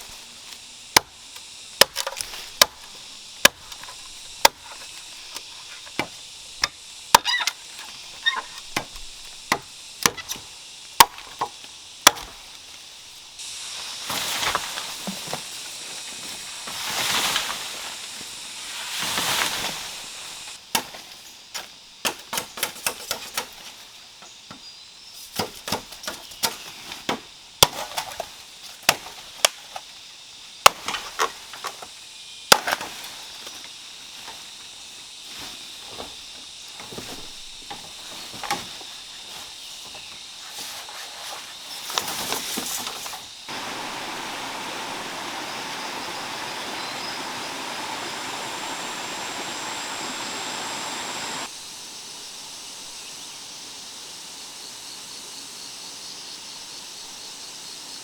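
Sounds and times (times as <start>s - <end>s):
blade chopping bamboo: 0.9s - 12.6s, 25.4s - 29.6s
continuous noise: 42.8s - 51.5s.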